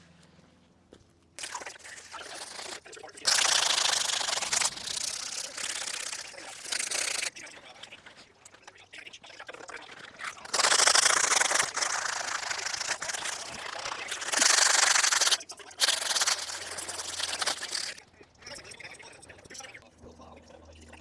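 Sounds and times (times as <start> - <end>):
wood being sanded: 1.4 - 7.3, 10.3 - 18.0.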